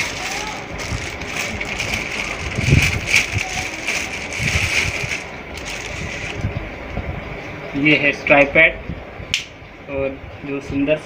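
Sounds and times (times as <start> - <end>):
packaging rustling: 0.0 - 6.4.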